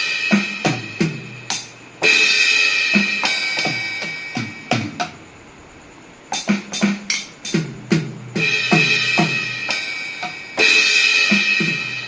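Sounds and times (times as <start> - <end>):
electronic drum strikes: 0.0 - 5.4, 6.3 - 12.0
cymbal crash: 8.4 - 12.0.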